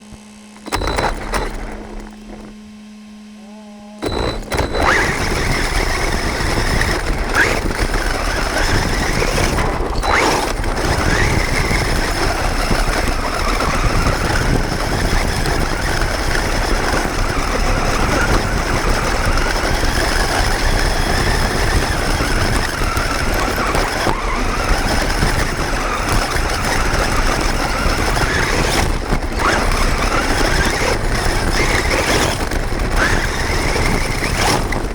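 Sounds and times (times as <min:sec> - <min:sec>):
steady hum: 0:00.0 - 0:19.9
electric motor and gear whine: 0:00.0 - 0:34.9.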